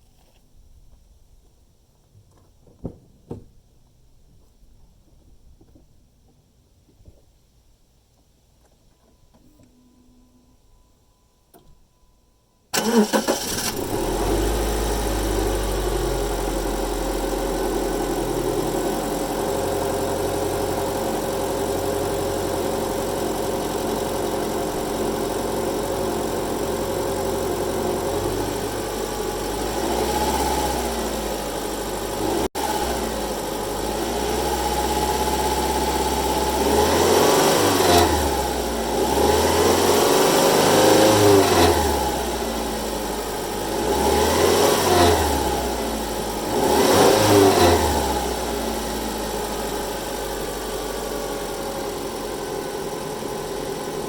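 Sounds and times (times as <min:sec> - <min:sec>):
car engine idling and revving: 0:12.8 - 0:54.0.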